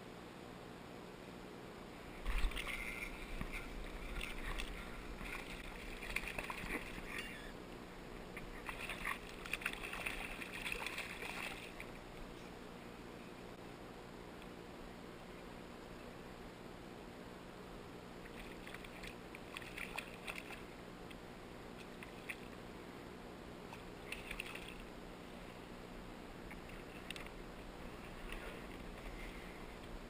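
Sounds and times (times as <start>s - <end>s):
water sloshing and splashing: 2.2s - 7.5s, 8.3s - 12.0s, 18.2s - 20.7s, 23.7s - 24.9s.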